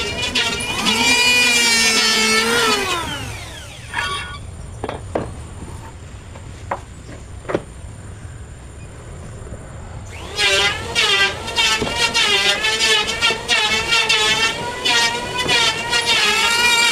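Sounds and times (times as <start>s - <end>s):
power tool motor whining: 0.0s - 4.5s, 10.1s - 16.9s
wooden knocks: 4.8s - 7.7s.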